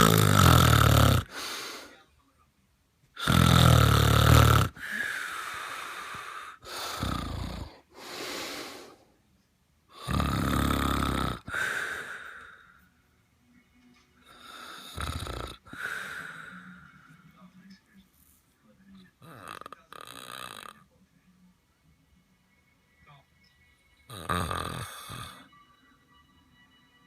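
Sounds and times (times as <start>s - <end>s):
loud snoring: 0.0s - 1.4s, 3.2s - 7.8s, 9.9s - 12.5s, 14.4s - 16.6s, 19.2s - 20.8s, 24.1s - 25.5s.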